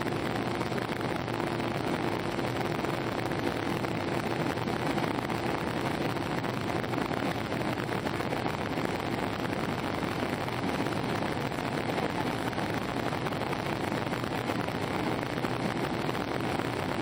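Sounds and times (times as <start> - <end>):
jet engine roar in cabin: 0.0 - 17.0.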